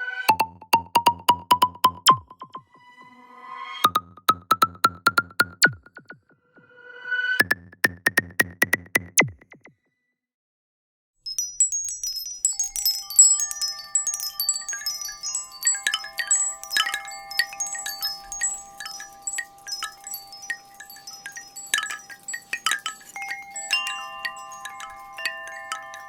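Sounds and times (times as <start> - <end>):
wind-chime style ringtone: 11.3 - 26.0.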